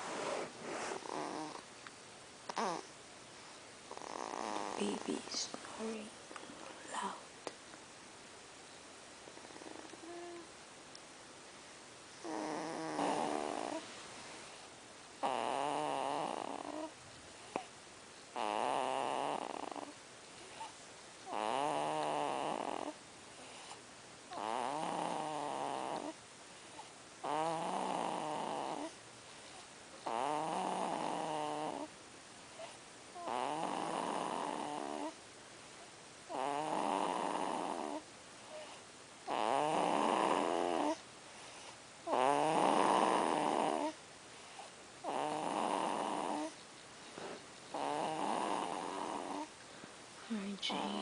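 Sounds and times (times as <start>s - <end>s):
baby snoring: 0.0s - 1.7s, 2.5s - 2.9s, 3.9s - 5.2s, 9.4s - 10.5s, 12.2s - 13.8s, 15.2s - 17.7s, 18.3s - 29.0s, 30.0s - 31.9s, 32.6s - 35.2s, 36.3s - 41.0s, 41.6s - 44.0s, 44.6s - 46.6s, 47.2s - 49.5s.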